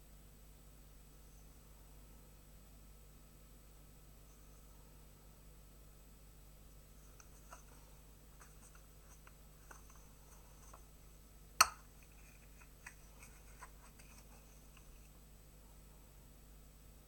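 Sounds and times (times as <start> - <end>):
faint scratching: 7.0 - 10.9, 11.9 - 15.2.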